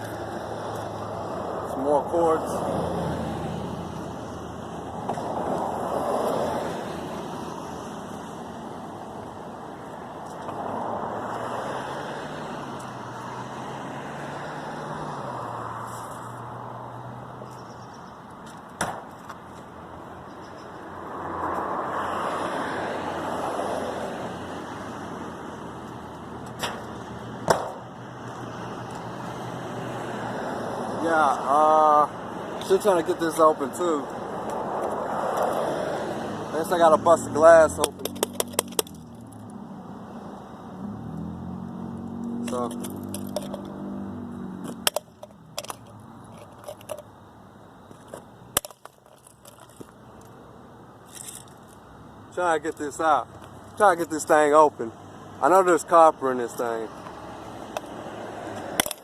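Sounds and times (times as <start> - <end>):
vehicle passing: 0.0 - 17.7, 20.8 - 47.0, 51.2 - 59.0
sharp knocks: 26.6 - 27.8.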